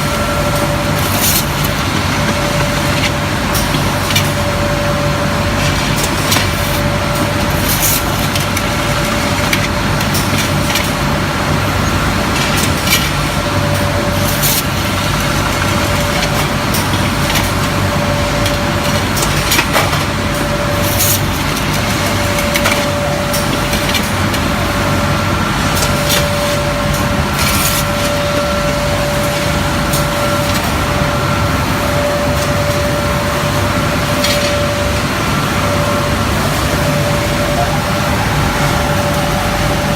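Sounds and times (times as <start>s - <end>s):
constant whine: 0.0s - 39.9s
loud machine drone: 0.0s - 39.9s
low hum: 32.0s - 39.9s.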